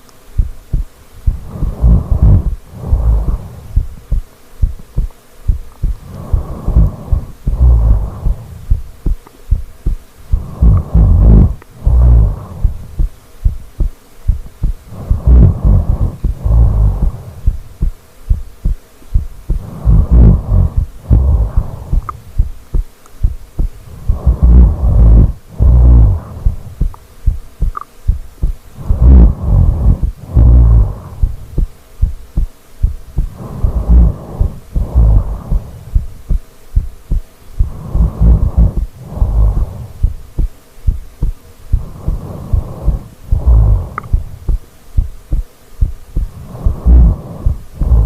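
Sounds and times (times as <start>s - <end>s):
person snoring loudly: 1.2s - 4.1s, 5.8s - 8.8s, 10.3s - 13.1s, 14.4s - 17.9s, 19.5s - 22.4s, 23.8s - 26.9s, 28.8s - 31.7s, 33.2s - 36.1s, 37.6s - 40.1s, 41.7s - 44.6s, 46.2s - 48.0s.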